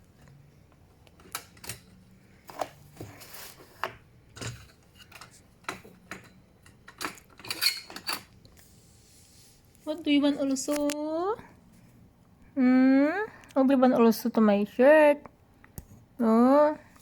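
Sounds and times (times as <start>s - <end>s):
cage door clicking and latching: 6.9s - 8.3s.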